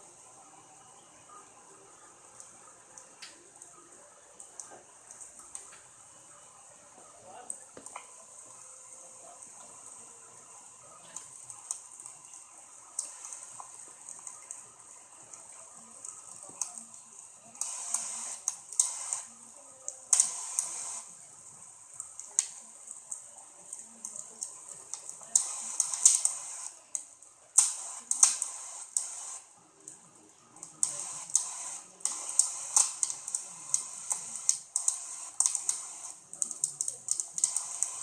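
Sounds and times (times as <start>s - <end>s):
steady hiss: 0.0s - 38.0s
wood fire crackling and popping: 2.4s - 3.7s, 10.9s - 30.0s, 30.6s - 38.0s.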